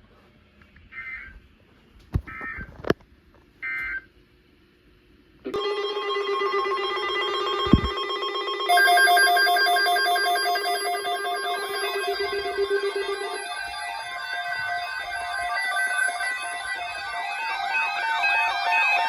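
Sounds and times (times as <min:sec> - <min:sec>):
high pulsing tones: 0:05.6 - 0:19.0
ringing electronic alert tone: 0:05.6 - 0:19.0
digital data bursts: 0:08.7 - 0:19.0.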